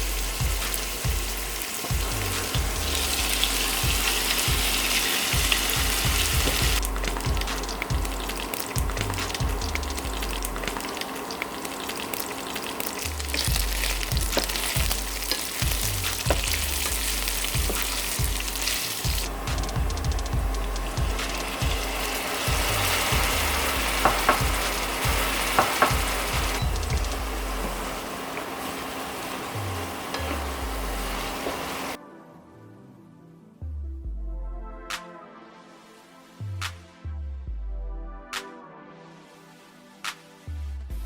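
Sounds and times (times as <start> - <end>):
food sizzling in oil: 0.0 - 32.0.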